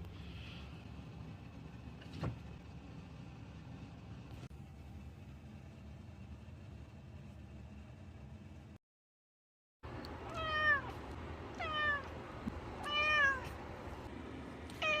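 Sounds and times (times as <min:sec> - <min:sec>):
cat meowing: 0:10.2 - 0:12.2, 0:12.8 - 0:13.6, 0:14.8 - 0:15.0.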